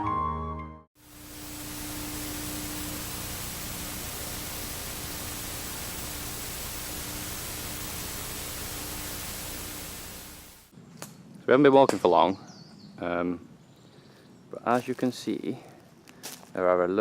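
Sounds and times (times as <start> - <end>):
static hiss: 1.0 - 10.7.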